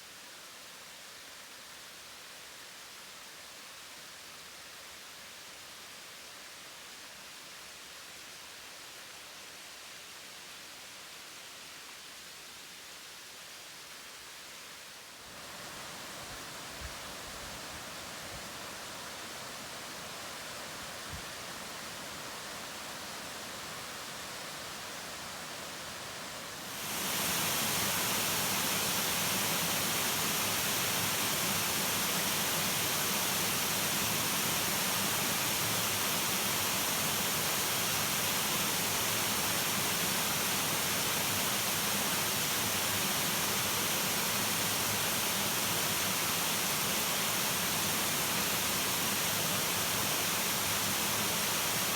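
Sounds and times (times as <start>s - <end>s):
stream water rushing: 21.5s - 51.9s
waterfall rushing: 26.5s - 51.9s.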